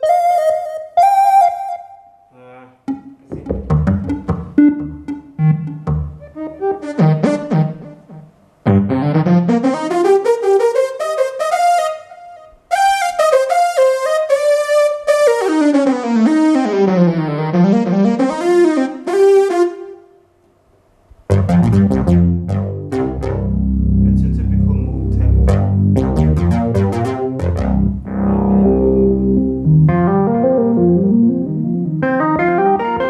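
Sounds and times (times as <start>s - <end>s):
synthesizer bass and chords: 2.9s - 10.7s, 15.4s - 19.3s, 21.3s - 33.0s
buzzy synthesizer lead: 3.6s - 11.7s, 14.4s - 19.7s, 21.3s - 33.0s.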